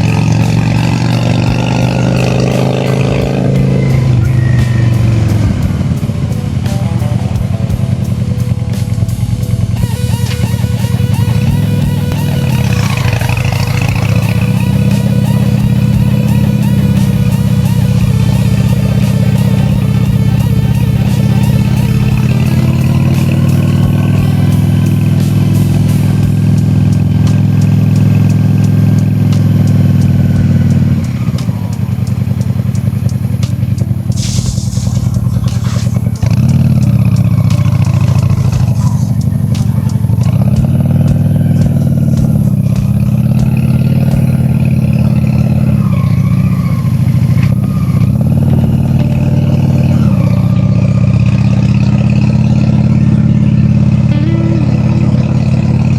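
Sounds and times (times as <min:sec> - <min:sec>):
motorcycle engine running: 0:00.0 - 0:55.9
brief hiss: 0:33.5 - 0:36.5.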